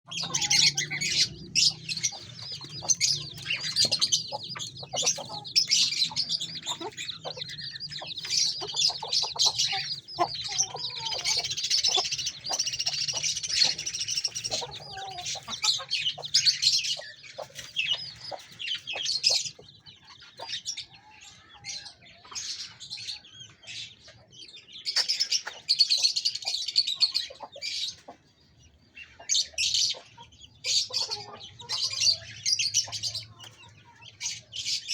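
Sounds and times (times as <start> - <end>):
small birds chirping: 0.0 - 34.9
chickens clucking: 0.1 - 34.9.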